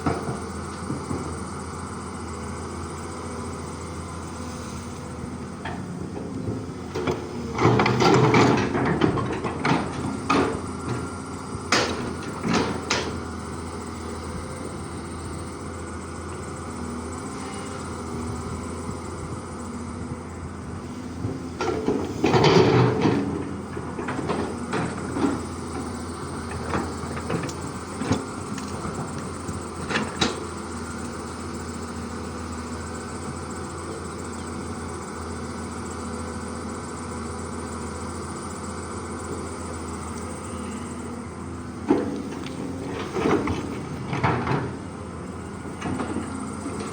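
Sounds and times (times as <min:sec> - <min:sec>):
excavator diesel engine running: 0:00.0 - 0:46.9
loud clunks and clattering: 0:05.6 - 0:13.3, 0:21.2 - 0:30.5, 0:41.7 - 0:46.9.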